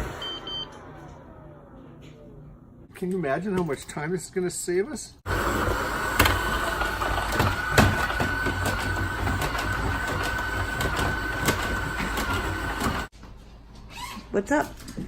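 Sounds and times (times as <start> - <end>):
robot vacuum running: 5.3 - 13.1.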